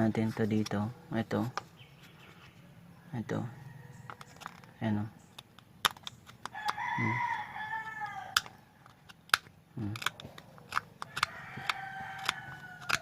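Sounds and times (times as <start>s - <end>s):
rooster crowing: 3.4s - 4.6s, 6.5s - 8.5s, 11.1s - 13.0s
sharp clicks: 4.2s - 6.9s, 8.0s - 13.0s.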